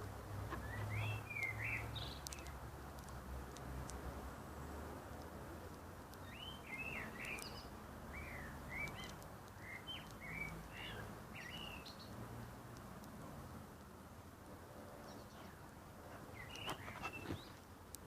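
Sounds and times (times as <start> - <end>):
outdoor background hiss: 0.0 - 18.0
bird chirping: 0.5 - 3.2, 6.1 - 12.2, 14.9 - 17.6.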